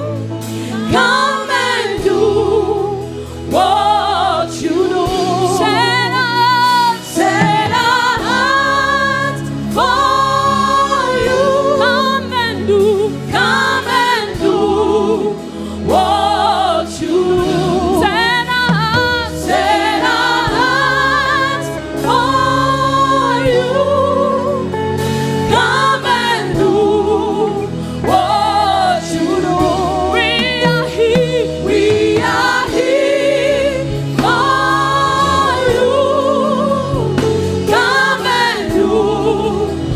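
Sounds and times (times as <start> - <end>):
voices singing together: 0.0 - 39.9
low instrumental notes: 1.6 - 39.9.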